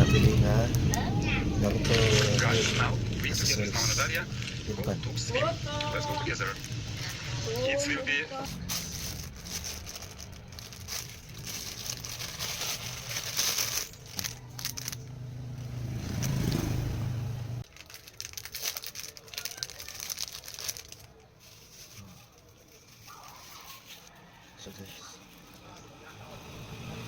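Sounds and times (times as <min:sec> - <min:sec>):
packaging crinkling and tearing: 0:00.0 - 0:05.2, 0:08.5 - 0:16.8, 0:17.6 - 0:25.6.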